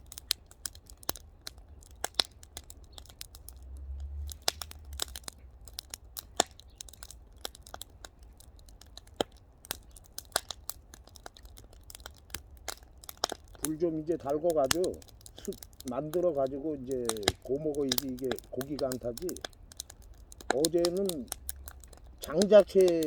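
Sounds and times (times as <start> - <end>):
fire pops and snaps: 0.0 - 23.0
firewood fire crackling: 0.0 - 23.0
low rumble: 3.5 - 5.7.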